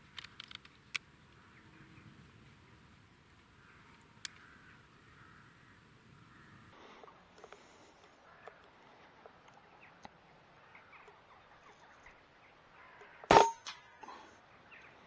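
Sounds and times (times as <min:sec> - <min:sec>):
air rifle shot: 0:13.3 - 0:13.7.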